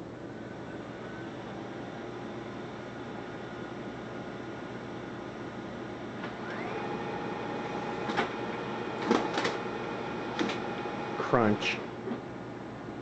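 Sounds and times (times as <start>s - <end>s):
printer humming: 0.0s - 13.0s
motor whining: 6.3s - 11.4s.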